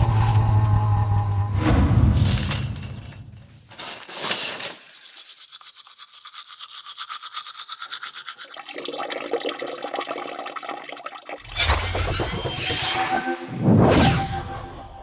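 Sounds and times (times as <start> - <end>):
toothbrush scrubbing: 4.8 - 8.9.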